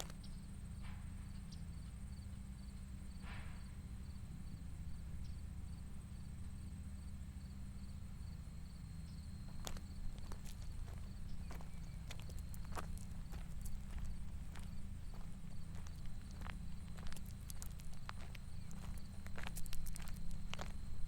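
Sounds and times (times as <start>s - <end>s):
insects chirping: 0.0s - 21.0s
wind rumble on microphone: 9.1s - 21.0s
footsteps: 9.5s - 21.0s.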